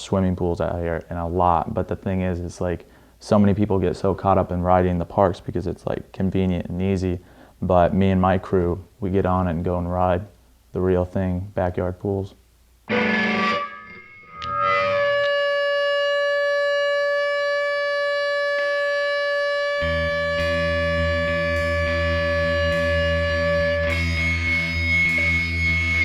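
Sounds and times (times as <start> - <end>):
distorted guitar tones: 12.8 - 26.0
heavy low bass: 19.8 - 26.0.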